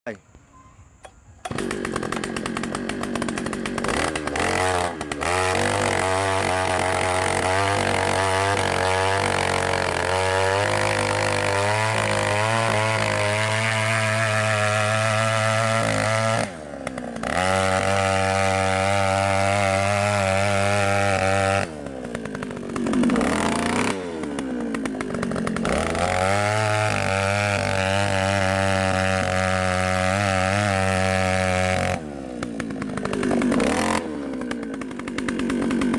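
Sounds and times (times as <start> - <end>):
motor-driven drill engine running: 1.4 - 12.8, 21.8 - 27.7, 32.2 - 35.9.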